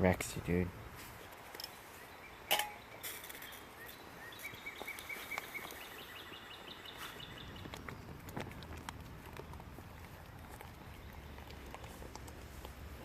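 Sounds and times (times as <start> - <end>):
outdoor background noise: 0.0 - 13.0
songbird chirping: 1.0 - 8.7, 10.1 - 12.7.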